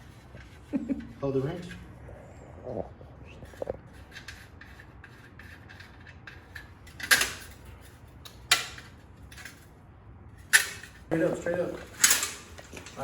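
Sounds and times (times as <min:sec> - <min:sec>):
wrench clicking and scraping: 0:03.5 - 0:09.7.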